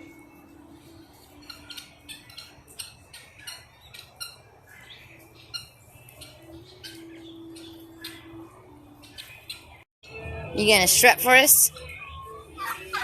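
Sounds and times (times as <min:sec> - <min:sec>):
farm birds squawking and chirping: 0:00.0 - 0:09.8, 0:11.5 - 0:13.0.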